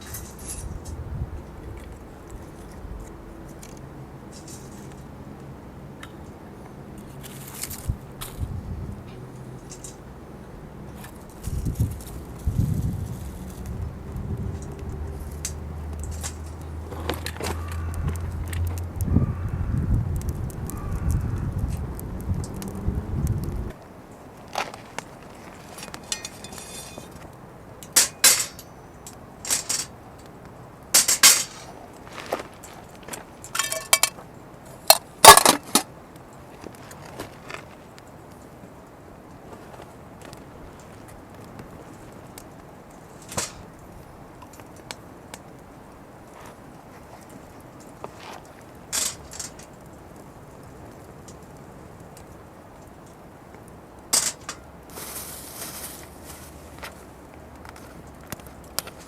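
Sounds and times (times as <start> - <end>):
camping gear clinking and clattering: 0.0 - 5.1, 9.5 - 10.1, 14.5 - 18.7, 24.2 - 30.0, 30.9 - 34.3, 34.9 - 38.2, 39.3 - 43.8, 46.2 - 50.0, 54.1 - 59.0
scrapes and rustles: 0.0 - 5.1, 7.0 - 10.0, 10.9 - 18.9, 23.4 - 28.7, 31.0 - 34.3, 34.9 - 38.1, 46.2 - 50.0, 54.1 - 59.0.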